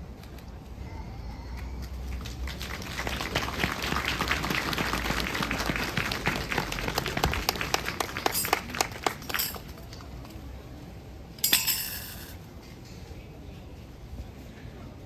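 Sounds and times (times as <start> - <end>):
crowd applauding: 1.8 - 9.8.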